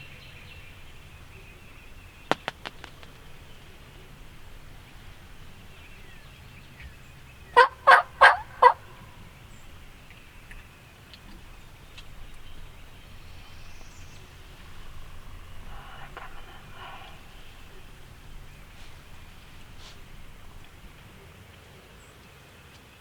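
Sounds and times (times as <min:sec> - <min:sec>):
turkey gobbling: 0:07.5 - 0:09.2, 0:15.6 - 0:21.0.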